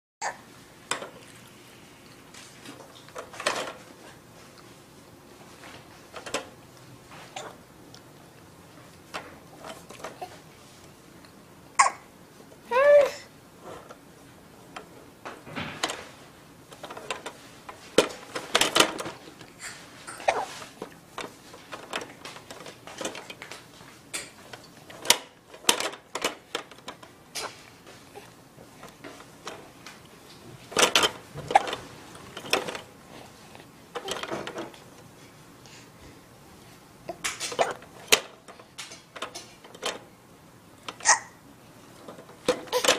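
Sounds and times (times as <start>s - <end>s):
plastic toys clacking and rattling: 2.7s - 4.0s, 5.6s - 6.6s, 9.1s - 10.4s, 15.5s - 27.7s, 30.6s - 32.9s, 33.9s - 34.9s, 37.2s - 40.1s, 41.9s - 42.9s.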